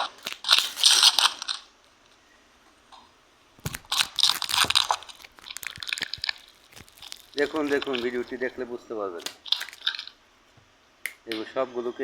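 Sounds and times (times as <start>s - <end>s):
clay crackling as crushed by hand: 0.0s - 2.2s, 3.6s - 10.2s.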